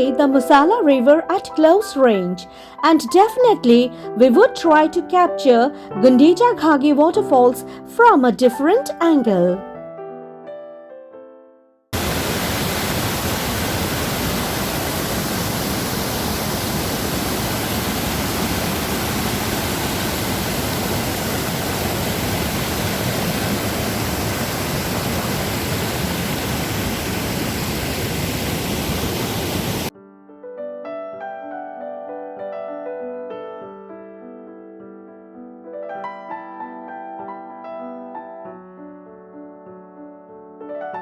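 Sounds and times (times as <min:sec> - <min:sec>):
soft piano music: 0:00.0 - 0:11.8, 0:29.9 - 0:41.0
waterfall roaring: 0:12.0 - 0:29.9.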